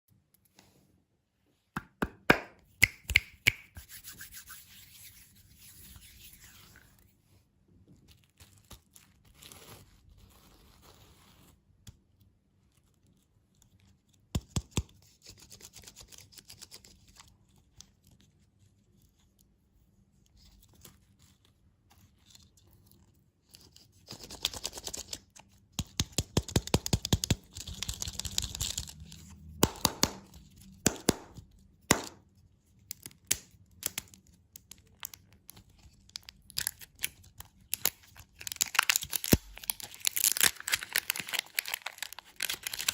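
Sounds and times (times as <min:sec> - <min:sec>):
candy wrapper crinkling: 0:26.8 - 0:29.2, 0:33.8 - 0:42.9.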